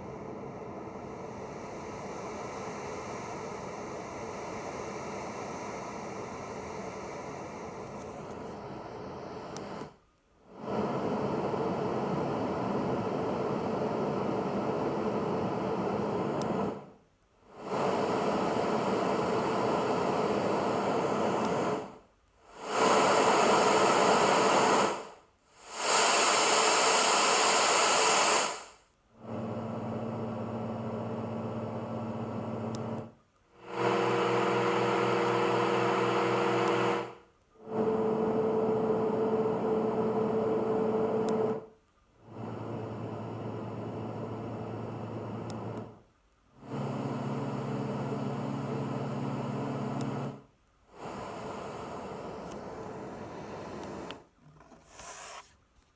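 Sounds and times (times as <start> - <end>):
hiss-like noise from speaker: 0.0 - 29.0.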